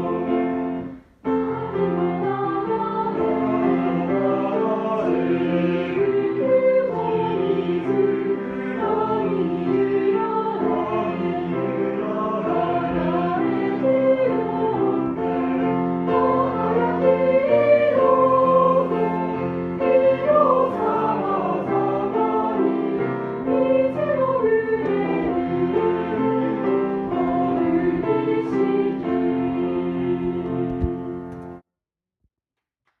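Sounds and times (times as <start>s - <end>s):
choir singing over held chords: 0.0s - 31.0s.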